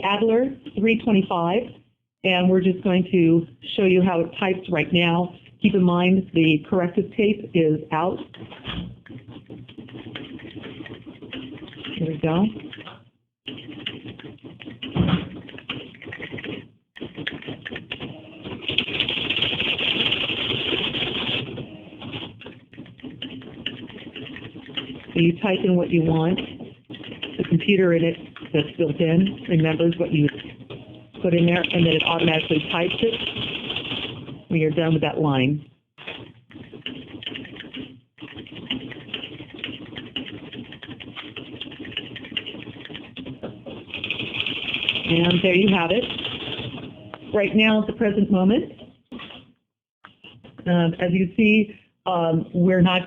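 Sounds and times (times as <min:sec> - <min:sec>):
typewriter printing rattle: 0:08.4 - 0:35.2, 0:36.0 - 0:47.5.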